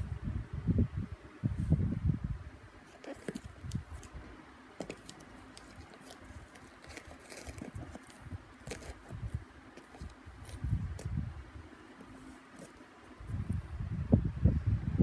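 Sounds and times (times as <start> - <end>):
cardboard clicks and rustles: 2.8 - 11.1, 11.8 - 13.6.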